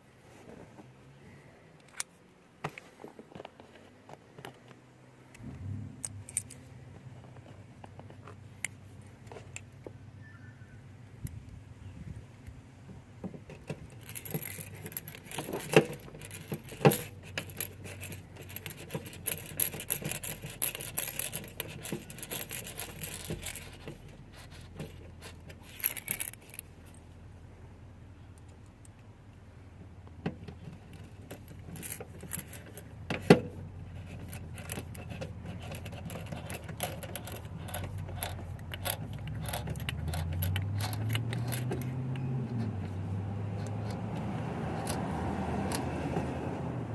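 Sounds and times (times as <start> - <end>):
metal tools jangling and scraping: 14.0 - 26.7, 30.9 - 33.0, 33.9 - 41.9.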